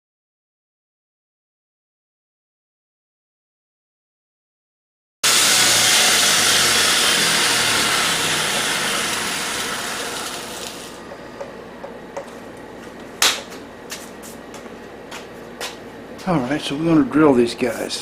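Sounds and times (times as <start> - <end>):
parts cleaning machine hissing: 5.2 - 11.4.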